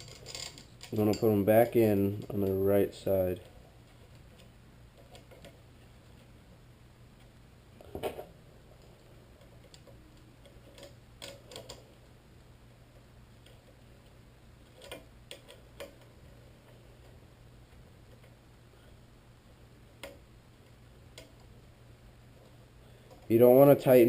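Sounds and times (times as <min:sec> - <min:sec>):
metal bolts clicking: 0:00.0 - 0:02.6
low steady hum: 0:00.0 - 0:24.0.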